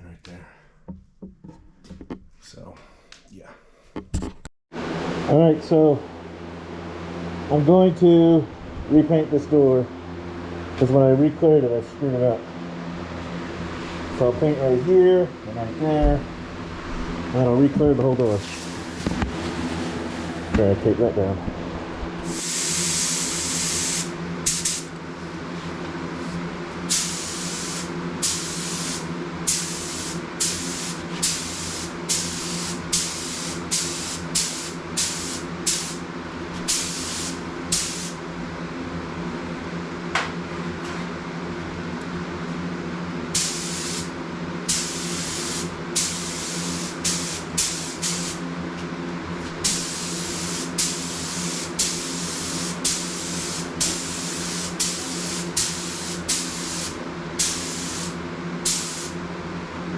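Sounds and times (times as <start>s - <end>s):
steady low hum: 4.8s - 59.9s
spray gun hissing: 22.3s - 24.9s, 26.9s - 36.0s, 36.7s - 38.2s, 43.4s - 44.1s, 44.7s - 48.4s, 49.6s - 59.2s.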